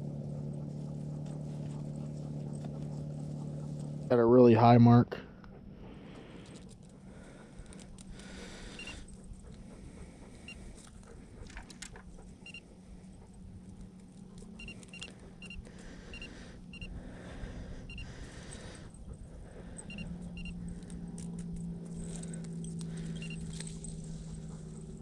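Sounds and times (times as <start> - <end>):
low steady hum: 0.0 - 25.0
faint clicks and rattles: 5.4 - 16.9.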